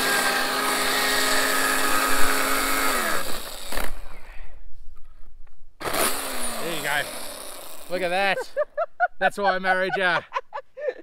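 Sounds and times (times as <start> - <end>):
earth auger motor running: 0.0 - 4.0, 5.8 - 8.2.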